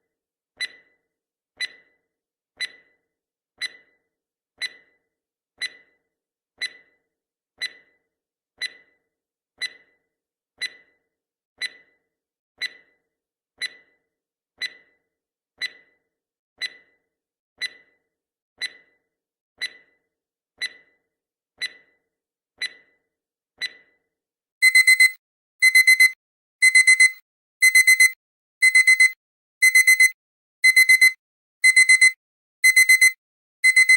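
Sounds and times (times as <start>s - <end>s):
timer ticking: 0.6s - 0.9s, 1.6s - 1.9s, 2.6s - 3.0s, 3.6s - 4.0s, 4.6s - 5.0s, 5.6s - 6.0s, 6.6s - 7.0s, 7.6s - 8.0s, 8.6s - 9.0s, 9.6s - 10.0s, 10.6s - 11.0s, 11.6s - 12.0s, 12.6s - 13.0s, 13.6s - 14.0s, 14.6s - 15.0s, 15.6s - 16.0s, 16.6s - 17.0s, 17.6s - 18.0s, 18.6s - 19.0s, 19.6s - 20.0s, 20.6s - 21.0s, 21.6s - 22.0s, 22.6s - 22.9s, 23.6s - 23.9s, 24.6s - 33.9s
digital alarm beeping: 24.6s - 33.9s.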